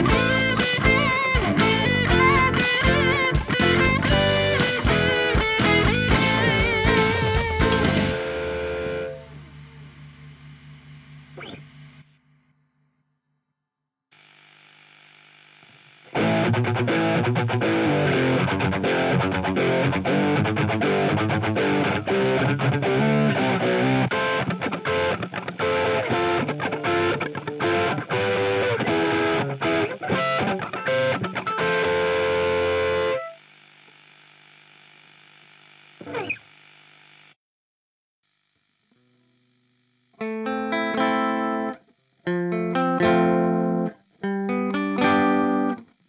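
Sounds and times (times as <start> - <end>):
steady hum and hiss: 0.0 - 12.5, 38.5 - 46.0
distorted electric guitar riffs: 0.0 - 12.6, 15.8 - 33.4, 36.0 - 36.5, 38.9 - 46.0.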